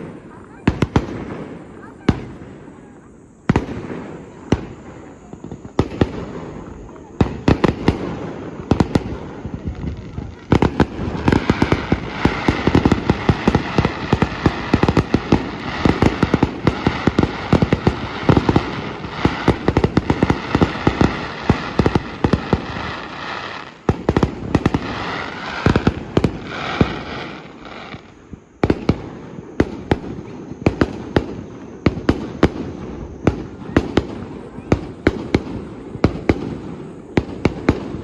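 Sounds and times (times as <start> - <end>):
fireworks bursting: 0.0 - 38.0
fireworks crackle: 0.0 - 38.0.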